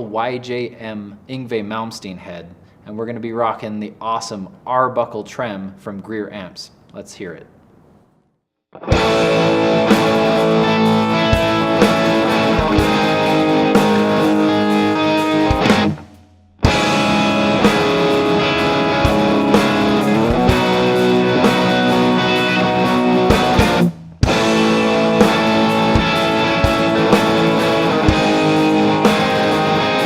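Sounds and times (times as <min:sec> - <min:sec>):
electric guitar chords: 0:08.8 - 0:30.0
drum beat: 0:08.9 - 0:30.0.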